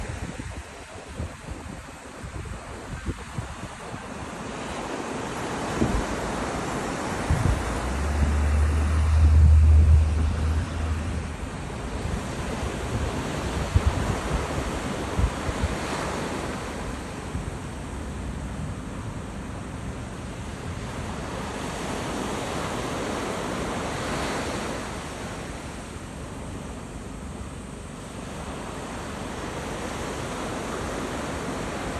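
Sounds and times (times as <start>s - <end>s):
sea waves breaking: 0.0s - 31.9s
wind rumble on microphone: 0.0s - 31.9s.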